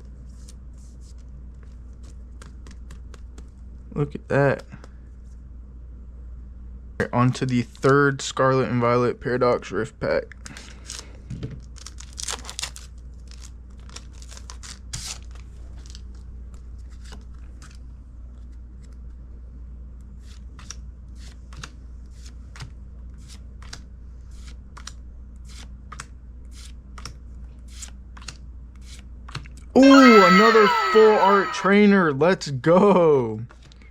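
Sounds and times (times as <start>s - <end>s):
foil wrapper tearing and crinkling: 11.8s - 13.5s.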